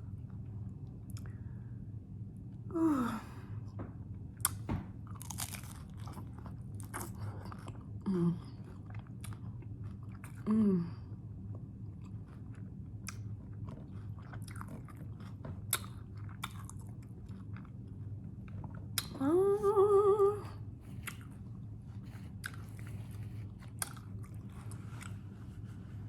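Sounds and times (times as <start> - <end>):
person humming mmm: 2.7 - 3.4, 10.5 - 11.0, 19.0 - 20.6
crunchy chewing: 4.4 - 7.9, 11.9 - 19.1, 20.8 - 25.4.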